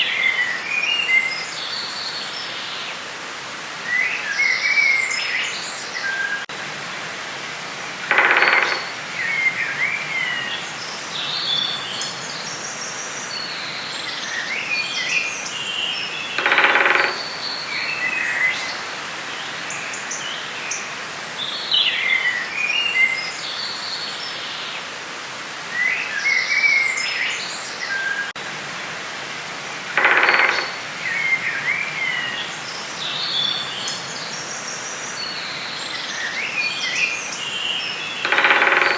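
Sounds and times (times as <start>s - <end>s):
steady background hiss: 0.0s - 38.9s
birds chirping and twittering: 7.8s - 24.7s, 29.7s - 38.9s
low-pitched bird call: 8.1s - 9.6s, 16.4s - 17.9s, 30.0s - 31.8s.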